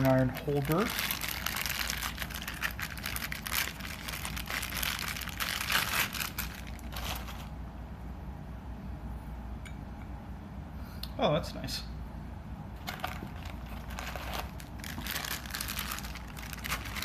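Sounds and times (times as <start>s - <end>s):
plastic packaging crinkling: 0.0s - 7.6s, 12.8s - 17.0s.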